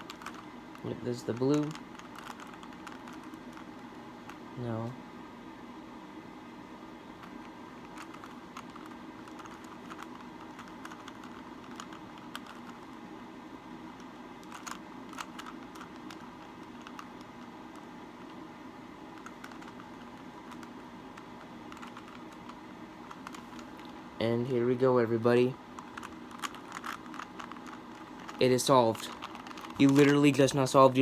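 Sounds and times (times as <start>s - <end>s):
puzzle cube clicking: 0.0s - 4.4s, 7.2s - 13.0s, 13.9s - 18.4s, 19.1s - 24.0s, 25.8s - 30.6s.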